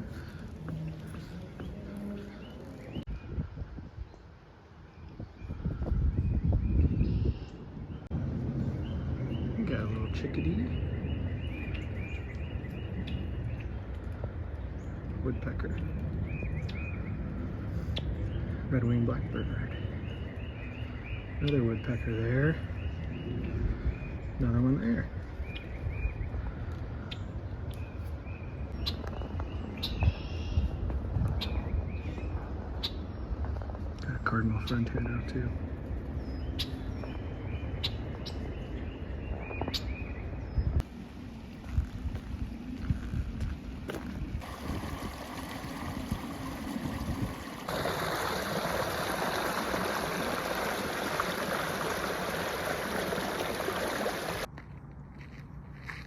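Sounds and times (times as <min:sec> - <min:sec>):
songbirds singing and calling: 0:00.0 - 0:40.9
wind rumble on microphone: 0:00.0 - 0:54.9
low rumble: 0:07.7 - 0:15.2
stream water rushing: 0:44.4 - 0:54.5.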